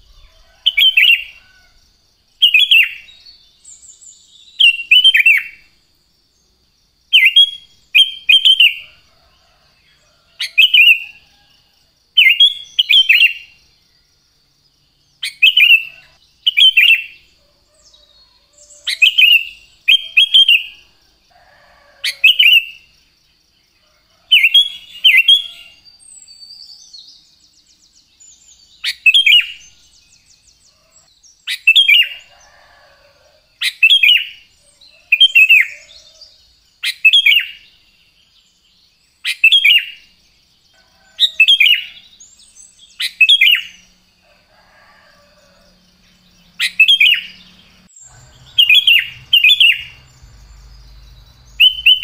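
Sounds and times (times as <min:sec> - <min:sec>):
bulbul singing: 0:45.4 - 0:52.0
faint bird trill: 0:46.5 - 0:52.0.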